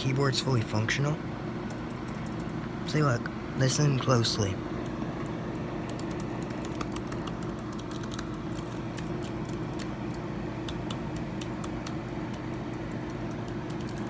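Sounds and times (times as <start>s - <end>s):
steady low hum: 0.0s - 14.0s
laptop keyboard typing: 1.6s - 2.6s, 4.8s - 14.0s.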